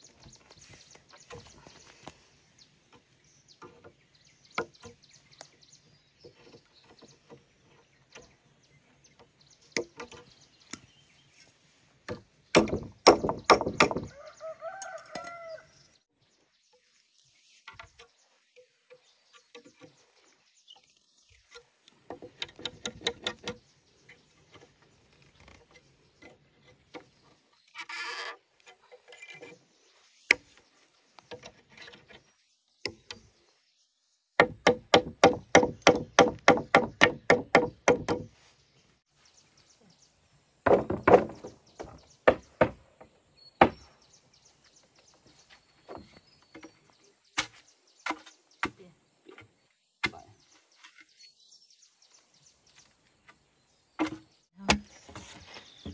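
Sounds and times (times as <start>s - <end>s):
chopping or knocking blows: 12.6s - 14.1s, 34.4s - 38.3s.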